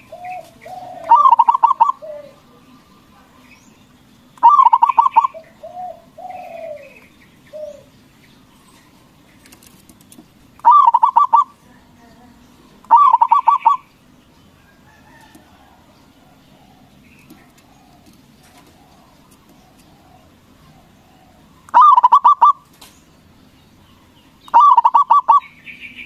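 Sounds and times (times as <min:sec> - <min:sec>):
dove cooing: 0:00.0 - 0:03.0, 0:04.4 - 0:07.9, 0:10.6 - 0:11.6, 0:12.8 - 0:13.9, 0:14.6 - 0:22.7, 0:24.5 - 0:26.0.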